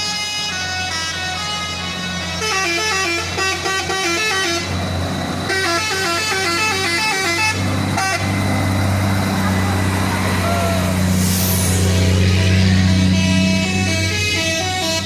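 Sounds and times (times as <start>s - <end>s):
truck horn playing a melody: 0.0s - 11.1s, 11.9s - 15.0s
truck engine drone: 0.0s - 15.0s.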